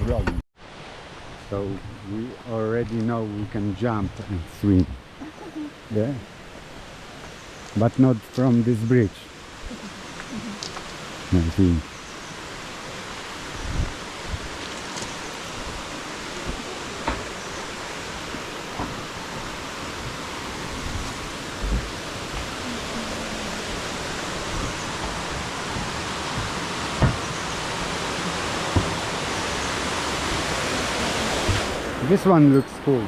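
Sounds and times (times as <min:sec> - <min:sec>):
waterfall and river rushing: 0:00.6 - 0:01.7, 0:05.8 - 0:33.0
soft thumps: 0:24.6 - 0:27.3.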